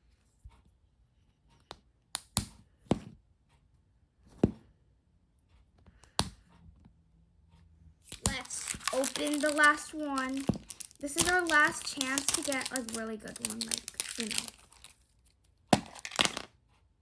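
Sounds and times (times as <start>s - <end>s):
plastic toy pieces clicking: 8.1s - 15.0s, 15.8s - 16.5s.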